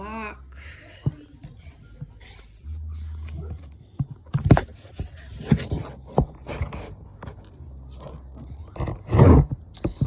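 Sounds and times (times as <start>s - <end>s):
blade cutting through cardboard: 4.4s - 10.0s.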